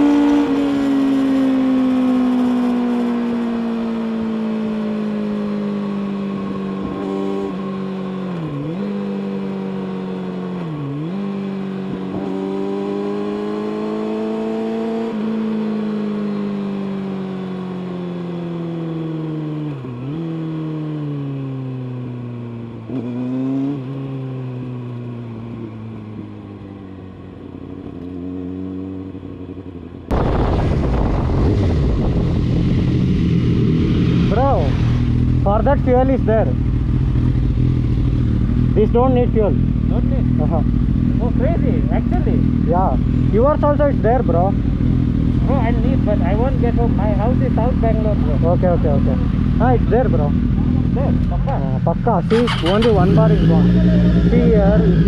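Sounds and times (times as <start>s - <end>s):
motorcycle engine running: 0.0s - 55.0s
rough low rumble: 30.1s - 55.0s.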